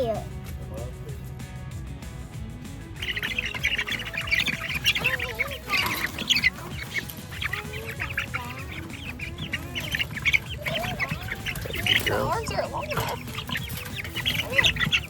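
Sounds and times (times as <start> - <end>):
baby chicks peeping: 0.0 - 15.0
lower gliding chick calls: 3.0 - 15.0.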